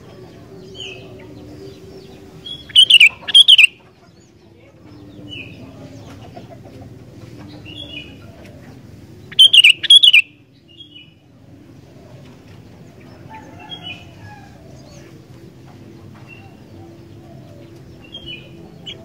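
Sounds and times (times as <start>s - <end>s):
bird chirping: 0.5s - 4.4s, 9.3s - 11.2s
short bird calls: 2.6s - 3.7s, 9.3s - 10.2s.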